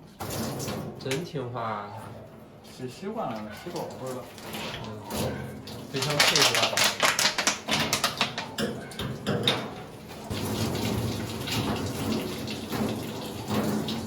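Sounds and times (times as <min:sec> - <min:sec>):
water splashing on a dog: 0:03.3 - 0:09.5, 0:10.1 - 0:14.0.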